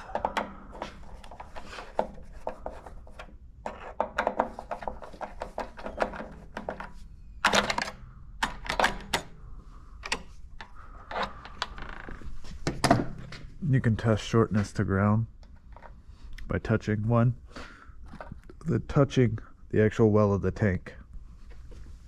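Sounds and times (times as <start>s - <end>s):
tools clicking and tapping: 0.0s - 9.4s.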